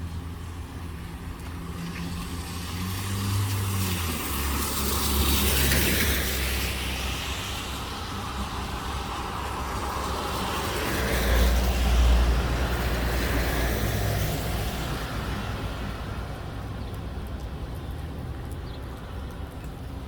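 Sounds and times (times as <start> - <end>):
low engine rumble: 14.3 - 20.0.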